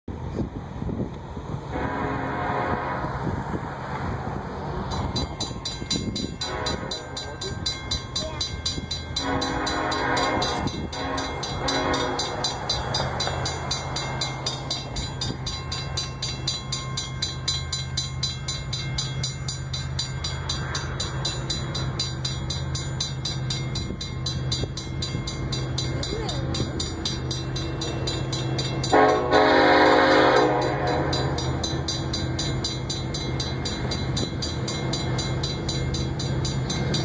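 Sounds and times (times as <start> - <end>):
diesel locomotive drone: 0.1 - 37.0
locomotive air horn blasts: 1.7 - 3.4, 6.4 - 7.1, 9.2 - 12.4, 28.9 - 31.4.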